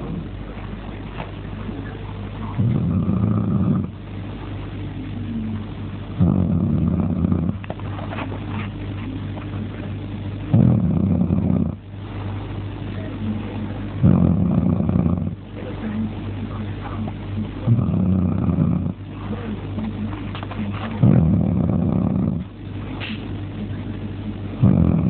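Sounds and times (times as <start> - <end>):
steady low hum: 0.0 - 25.0
man snoring loudly: 2.6 - 3.9, 6.2 - 7.6, 10.5 - 11.8, 14.0 - 15.4, 17.6 - 19.0, 21.0 - 22.5, 24.6 - 25.0.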